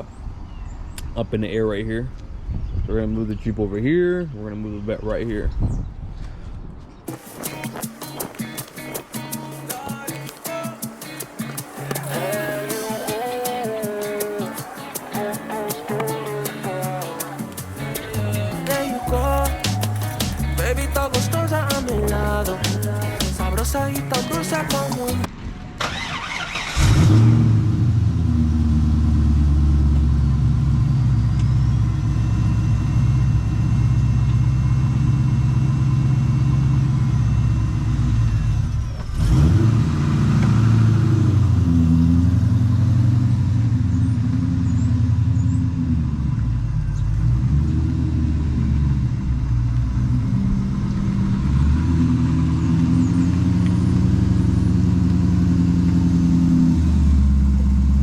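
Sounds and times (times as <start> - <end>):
car engine idling: 7.2 - 25.3, 39.8 - 58.0.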